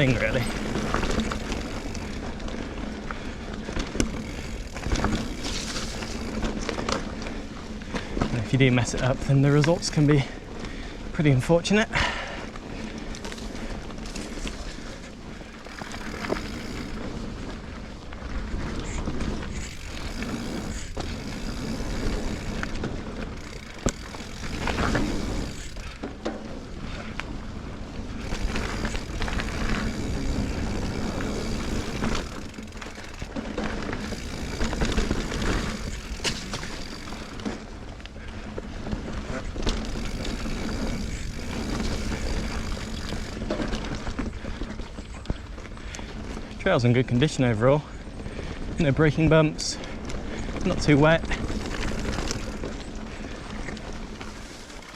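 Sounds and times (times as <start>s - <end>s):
bike knocks and rattles: 0.0s - 10.4s, 12.0s - 45.5s, 50.4s - 54.9s
tyre and wind rush: 8.2s - 37.7s, 38.8s - 44.4s.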